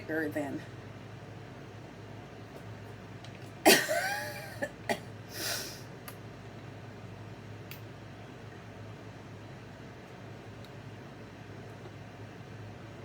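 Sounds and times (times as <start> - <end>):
woman coughing: 3.6 - 5.1.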